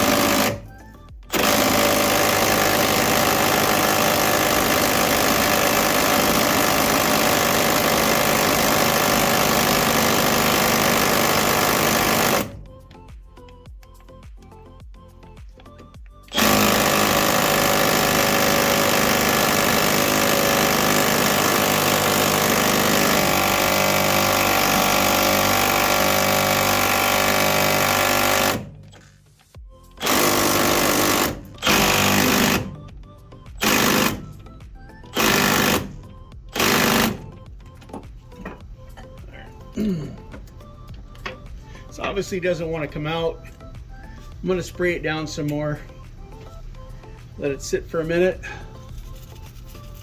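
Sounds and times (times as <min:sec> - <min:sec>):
impact wrench hammering: 0:00.0 - 0:12.9, 0:15.6 - 0:29.2, 0:30.0 - 0:39.4.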